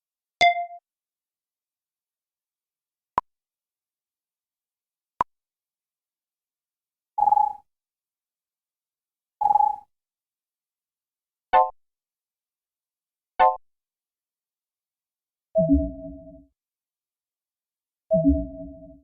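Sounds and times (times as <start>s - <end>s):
short electronic beeps: 0.4s - 0.8s, 7.2s - 7.6s, 9.4s - 9.8s.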